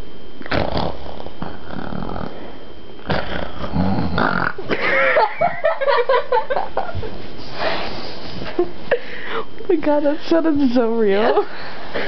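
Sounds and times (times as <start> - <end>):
person imitating snoring: 0.4 - 4.7.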